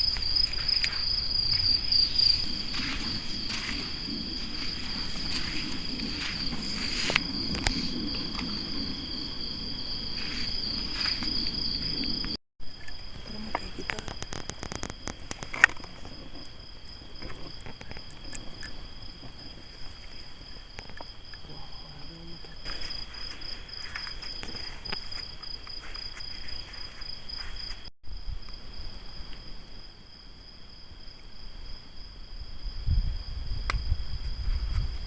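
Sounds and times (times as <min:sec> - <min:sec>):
campfire crackling and popping: 0:00.0 - 0:21.5
crickets trilling: 0:00.0 - 0:35.0.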